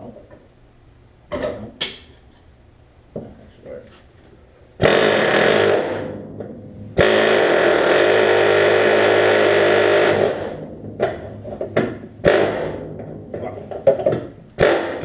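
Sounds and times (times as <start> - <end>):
air chisel hammering: 14.6 - 15.0.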